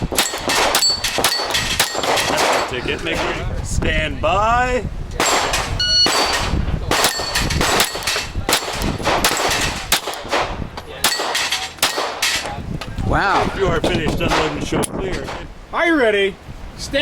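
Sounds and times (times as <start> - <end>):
pistol firing rapid shots: 0.0 - 3.3, 5.2 - 12.2
steel targets clanging: 0.1 - 3.4, 5.2 - 12.6
shot timer beep: 5.8 - 6.4.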